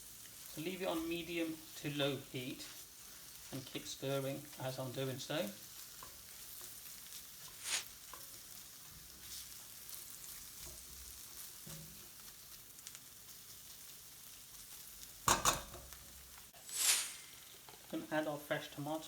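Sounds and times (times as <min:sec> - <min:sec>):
masala sizzling in a pan: 0:00.0 - 0:19.0
utensil scraping a pan: 0:05.7 - 0:09.7.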